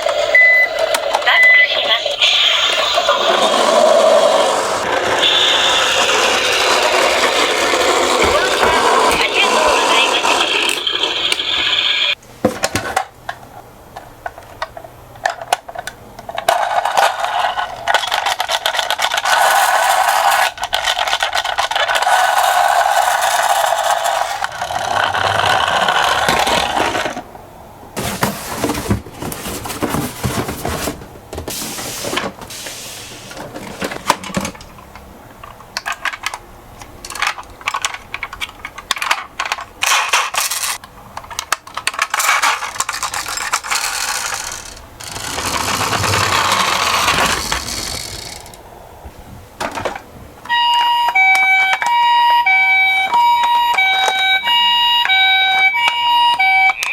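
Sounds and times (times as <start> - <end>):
toy cars rolling rattle: 2.2 - 12.2, 14.3 - 27.2, 37.0 - 48.6
metal toy cars knocking track: 14.6 - 27.2, 37.0 - 48.6.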